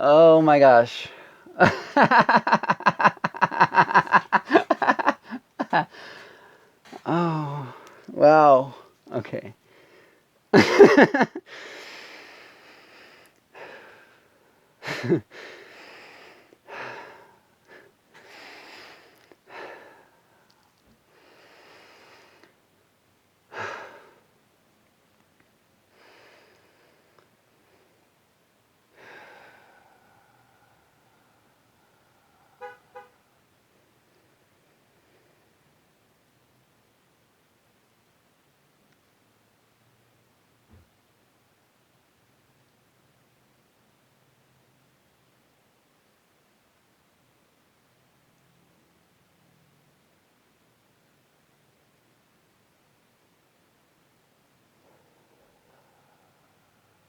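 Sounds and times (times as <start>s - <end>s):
man laughing: 0.0s - 6.3s, 6.9s - 9.5s, 10.6s - 11.7s, 14.8s - 15.4s
person breathing: 1.0s - 8.9s, 9.6s - 10.2s, 11.4s - 22.5s, 23.5s - 24.3s, 28.9s - 32.6s, 54.8s - 57.0s.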